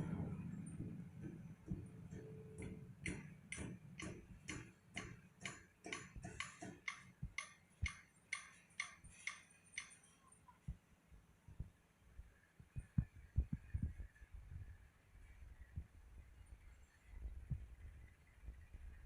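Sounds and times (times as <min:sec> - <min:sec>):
faint regular ticking: 0:00.7 - 0:10.8.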